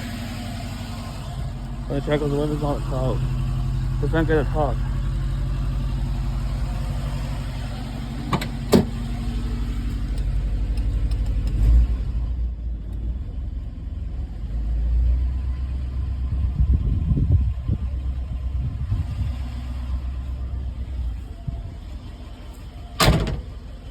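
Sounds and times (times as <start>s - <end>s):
car engine idling: 0.0s - 14.4s, 15.5s - 23.9s
thump: 8.3s - 9.0s, 23.0s - 23.5s.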